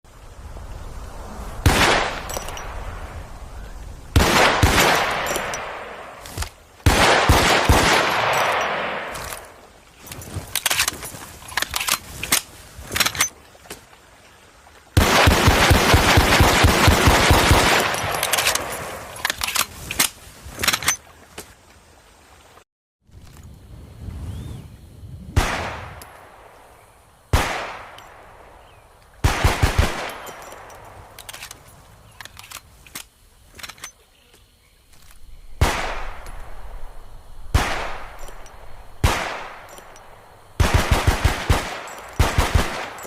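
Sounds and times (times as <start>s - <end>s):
pistol shots echoing: 4.2s - 6.2s, 6.8s - 9.2s, 37.5s - 38.2s, 39.0s - 40.0s, 40.6s - 43.0s
gun clicks: 10.4s - 13.3s, 17.2s - 21.0s, 29.8s - 34.0s, 37.6s - 40.2s
rapid gunfire: 15.0s - 18.0s, 40.6s - 43.0s.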